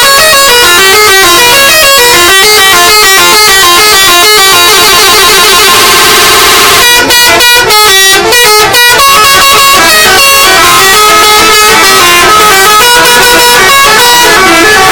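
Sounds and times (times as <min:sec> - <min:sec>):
musical bus horns playing tunes: 0:00.0 - 0:14.9.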